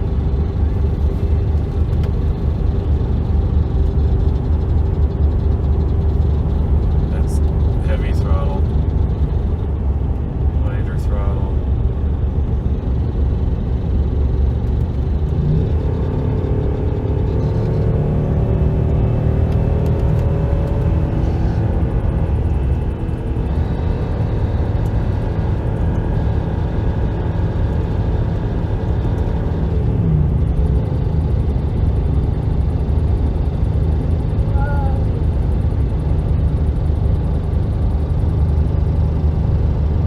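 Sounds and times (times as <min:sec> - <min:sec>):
car engine running: 0:00.0 - 0:40.0
engine ticking: 0:19.8 - 0:26.3.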